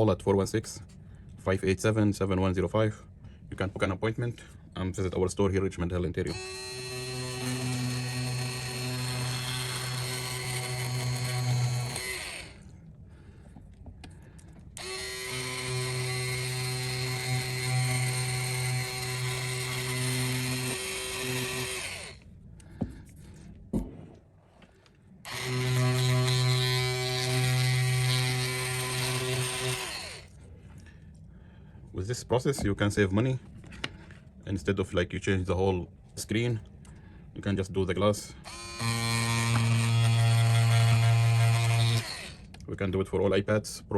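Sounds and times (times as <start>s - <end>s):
small electric tool motor running: 6.3s - 12.7s, 14.3s - 22.3s, 25.2s - 30.4s, 38.3s - 42.6s.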